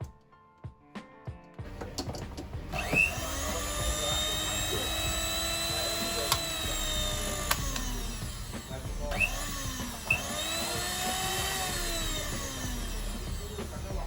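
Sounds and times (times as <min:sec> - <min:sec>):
sharp clicks: 0:01.7 - 0:08.1
blender motor whining: 0:01.7 - 0:14.0.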